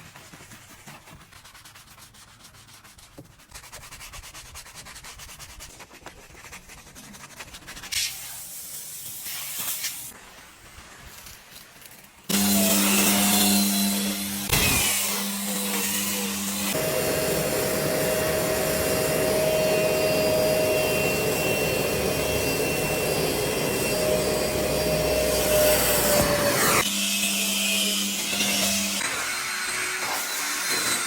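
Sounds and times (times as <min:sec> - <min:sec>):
vacuum cleaner running: 0:12.3 - 0:31.0.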